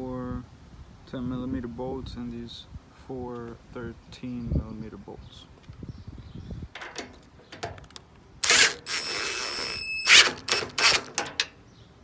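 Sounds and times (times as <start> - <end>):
tools and bolts clattering: 6.8 - 9.4, 10.1 - 11.6.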